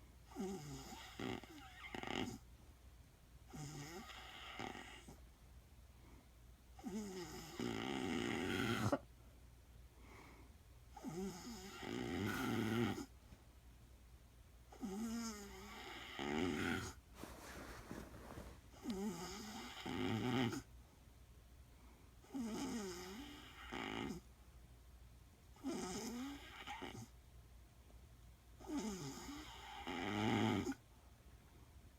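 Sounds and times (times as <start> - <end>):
woman snoring: 6.8 - 9.0, 11.0 - 13.1, 14.8 - 20.6.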